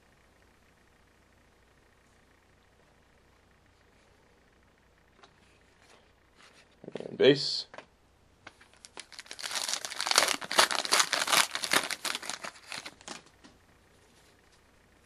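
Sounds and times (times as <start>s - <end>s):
wrapper crinkling and tearing: 8.6s - 13.3s.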